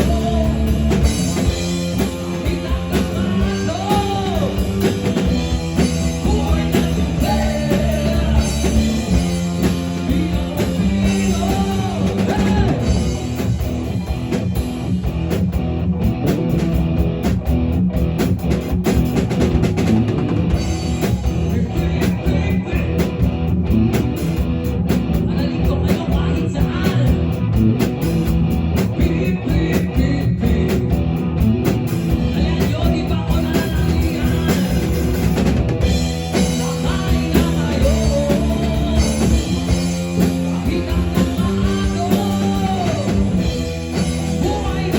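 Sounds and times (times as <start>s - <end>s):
person singing: 0.0s - 13.2s, 32.2s - 35.0s, 36.3s - 44.9s
drum kit: 0.0s - 44.9s
guitar: 0.0s - 44.9s.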